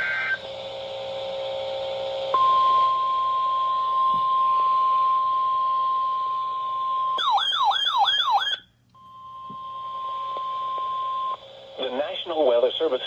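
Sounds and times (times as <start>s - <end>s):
steady warning alarm tone: 6.8s - 10.2s
falling siren-like wail: 7.2s - 8.6s.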